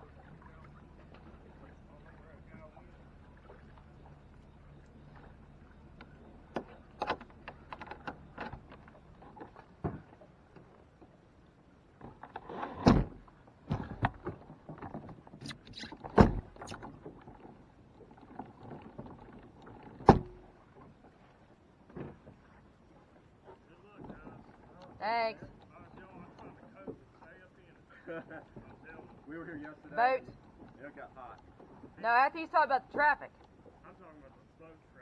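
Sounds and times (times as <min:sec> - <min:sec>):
kayak gear clattering: 0:05.1 - 0:11.2, 0:11.9 - 0:32.2.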